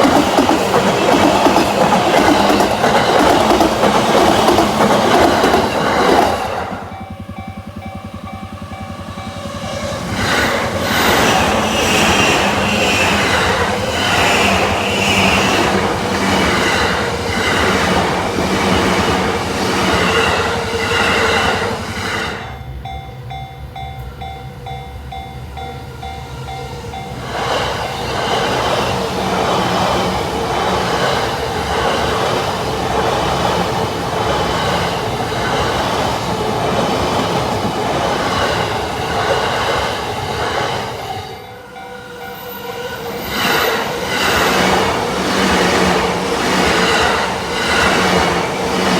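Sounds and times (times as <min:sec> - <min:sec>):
train wheels clattering over rails: 0:00.0 - 0:22.4, 0:43.0 - 0:48.9
level crossing warning bell: 0:06.8 - 0:10.1, 0:22.4 - 0:27.3, 0:41.3 - 0:43.6.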